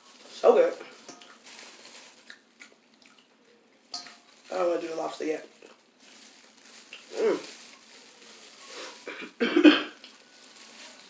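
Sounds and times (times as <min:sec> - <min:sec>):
person coughing: 0:09.0 - 0:10.0.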